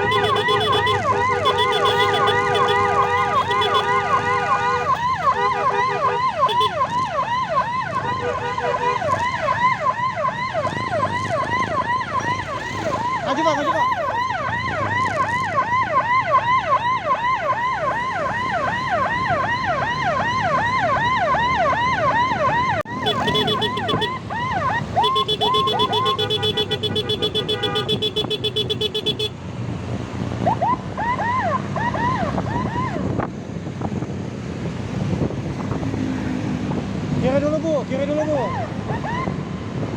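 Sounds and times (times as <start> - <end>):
pulsing horn tone: 0.0 - 10.0, 22.9 - 29.3
emergency siren yelping: 0.0 - 26.9, 30.4 - 33.3, 38.4 - 39.9
road noise: 0.0 - 39.9.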